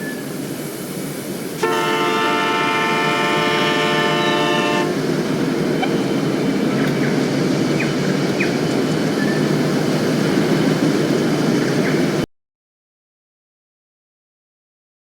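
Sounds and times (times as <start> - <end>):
train rumbling: 0.0 - 12.3
train horn blast: 1.6 - 5.1.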